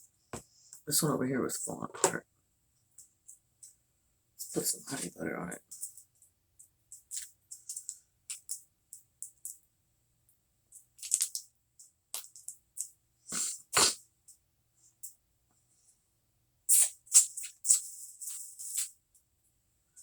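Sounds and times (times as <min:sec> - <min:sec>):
packet crackling and clicking: 0:12.1 - 0:12.9.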